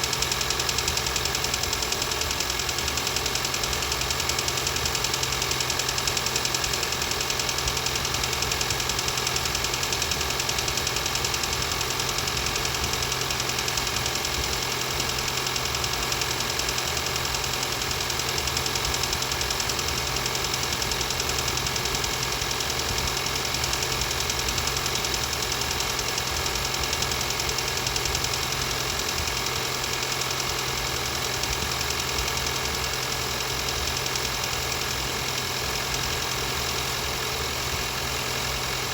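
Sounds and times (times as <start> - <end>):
car engine idling with knock: 0.0 - 38.9.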